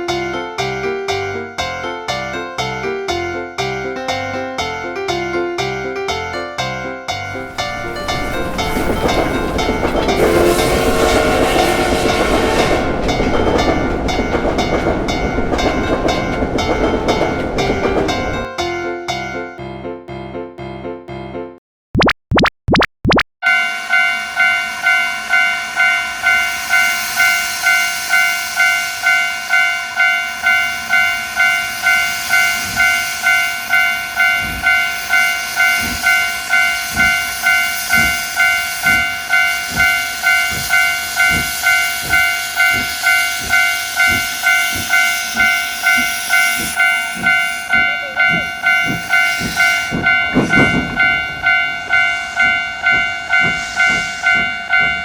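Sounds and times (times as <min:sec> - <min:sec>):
level-crossing alarm dinging: 0:07.2 - 0:18.5, 0:23.4 - 0:55.0
passing train clatter: 0:07.3 - 0:18.5, 0:24.2 - 0:55.0
steam locomotive hiss: 0:07.4 - 0:18.4, 0:24.8 - 0:29.1, 0:30.7 - 0:54.5.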